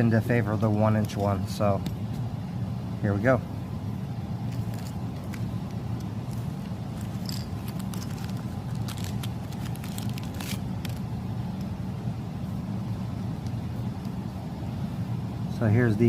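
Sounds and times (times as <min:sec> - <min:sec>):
low background hum: 0:00.0 - 0:16.0
small metal parts clicking: 0:07.0 - 0:10.9.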